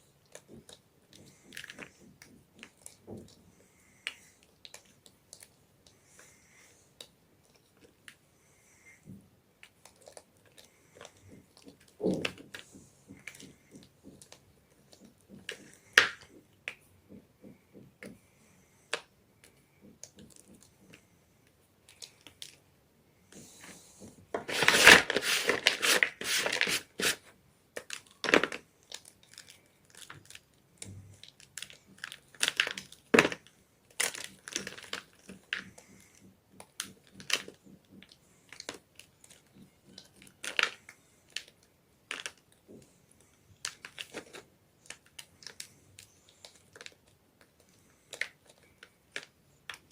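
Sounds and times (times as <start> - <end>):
chalk crunching and crumbling: 24.4 - 27.3.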